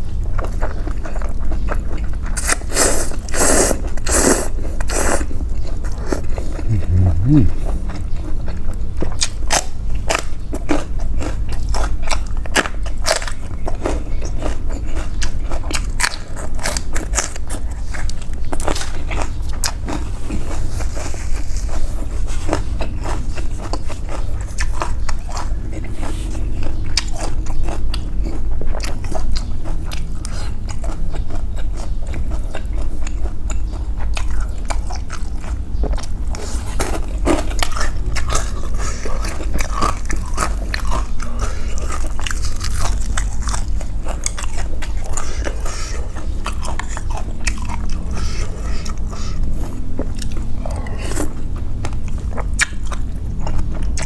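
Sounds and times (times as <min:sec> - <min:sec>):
person chewing and smacking: 0:00.2 - 0:54.0
steady low rumble: 0:06.6 - 0:08.0.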